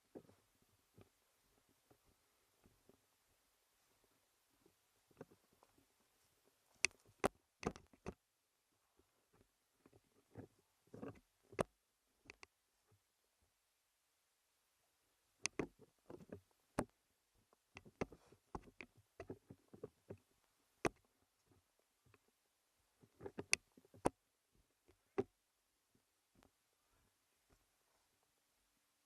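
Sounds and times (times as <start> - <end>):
sharp clicks and knocks: 6.8 - 8.2, 15.4 - 17.0, 17.6 - 21.1.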